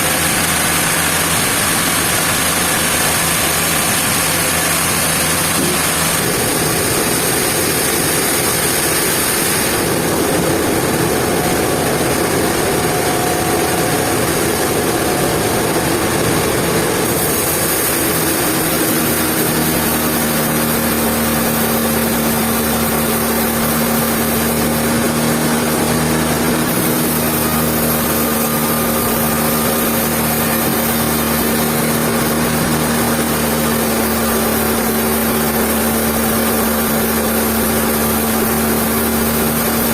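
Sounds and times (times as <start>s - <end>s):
sawmill machinery running: 0.0s - 39.9s
steady hum: 0.0s - 39.9s.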